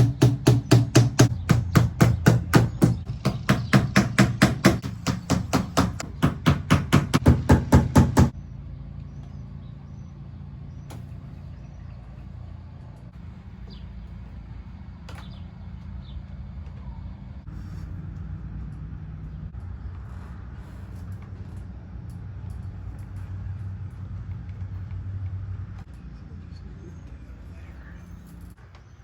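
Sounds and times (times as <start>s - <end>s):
low hum: 8.3s - 28.9s.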